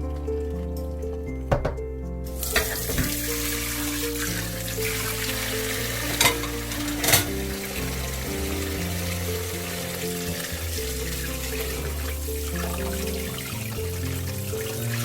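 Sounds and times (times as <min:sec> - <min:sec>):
background music: 0:00.0 - 0:15.0
steady kitchen hiss: 0:02.4 - 0:15.0.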